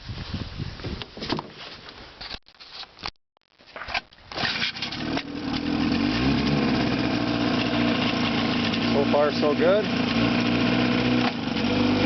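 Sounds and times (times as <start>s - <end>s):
outboard engine starting and running: 4.3s - 12.0s.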